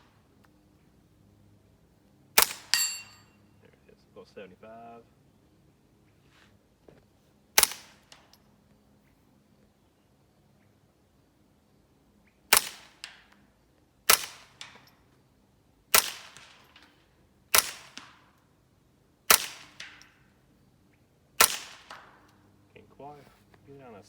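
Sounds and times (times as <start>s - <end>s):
suppressed rifle shots: 2.4s - 3.3s, 7.6s - 8.4s, 12.5s - 13.4s, 14.1s - 14.9s, 15.9s - 18.4s, 19.3s - 20.3s, 21.4s - 22.4s.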